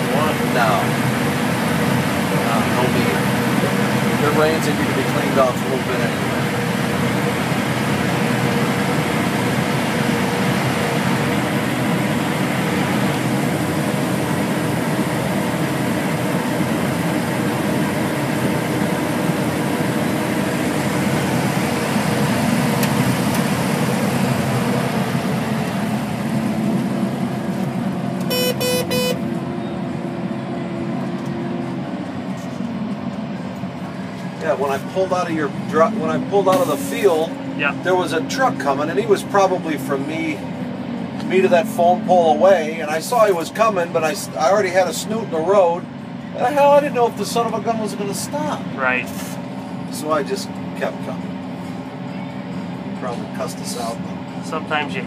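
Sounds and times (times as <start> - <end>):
vehicle engine and road noise: 0.0 - 55.0
short beeps: 28.3 - 29.2.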